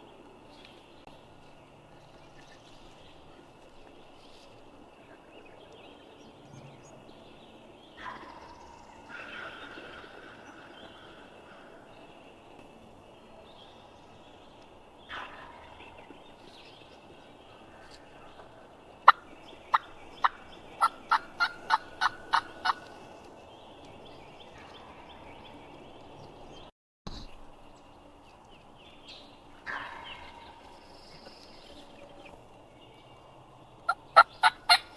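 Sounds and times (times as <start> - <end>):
sharp turkey yelps: 19.1 - 22.9, 33.9 - 34.9.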